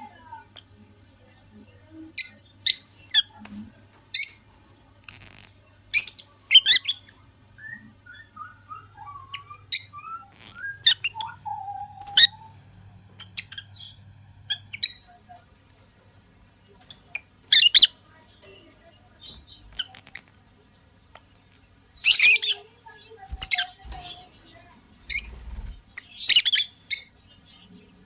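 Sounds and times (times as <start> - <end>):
lovebirds chirping: 5.9 - 15.3, 21.4 - 28.0
warbling bird chatter: 22.0 - 27.4.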